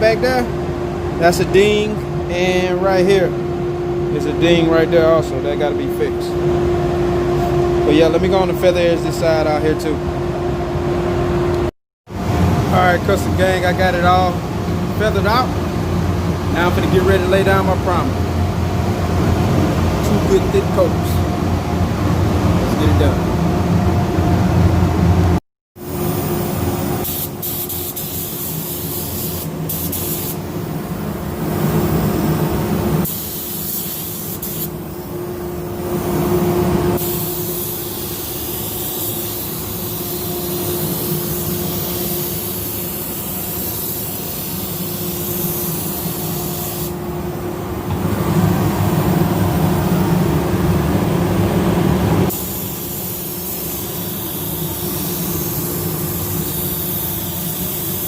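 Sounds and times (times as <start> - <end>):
steady low hum: 0.0 - 58.0
spray gun hissing: 25.8 - 30.5, 33.0 - 35.0, 37.0 - 47.0, 52.3 - 58.0.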